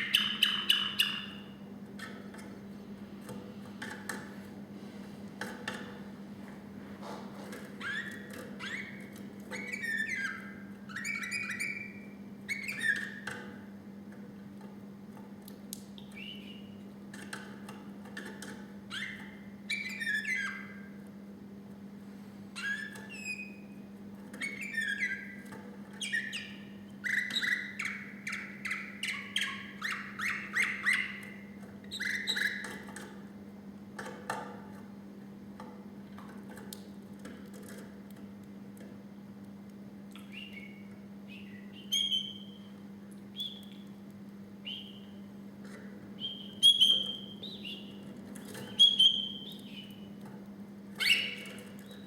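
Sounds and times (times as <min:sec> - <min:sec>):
canary singing: 0:00.0 - 0:02.1, 0:07.8 - 0:13.4, 0:16.0 - 0:16.8, 0:18.9 - 0:21.0, 0:22.6 - 0:32.8, 0:40.1 - 0:44.0, 0:44.6 - 0:45.4, 0:46.2 - 0:50.2, 0:50.9 - 0:52.0.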